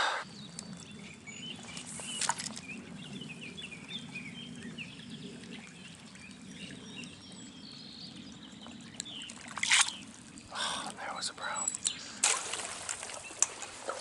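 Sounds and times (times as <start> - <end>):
small birds chirping: 0.0 - 12.3
stream flowing: 8.3 - 14.0.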